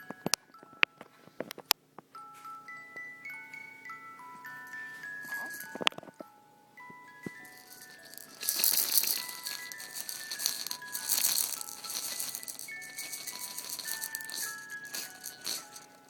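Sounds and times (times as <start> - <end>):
toy chime melody: 2.2 - 16.0
baby rattle shaking: 4.6 - 6.1, 7.2 - 16.0.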